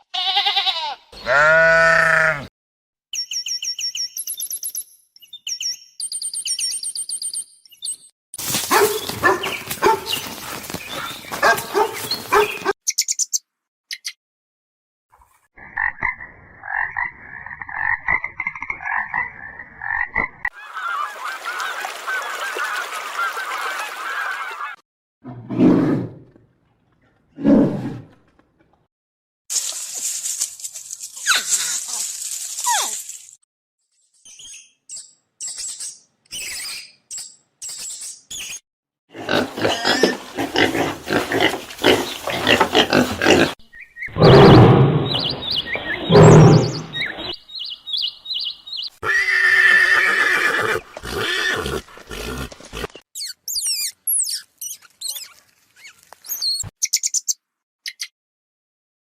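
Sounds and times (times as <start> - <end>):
pitched animal call: 0.2 - 2.5, 49.0 - 52.9.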